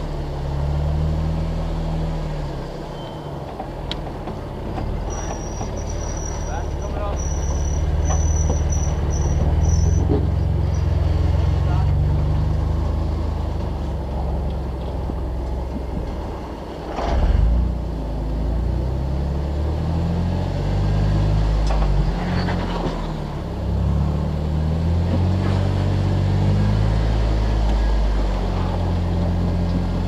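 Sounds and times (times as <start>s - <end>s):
engine revving under load: 0.0s - 2.8s, 15.9s - 30.0s.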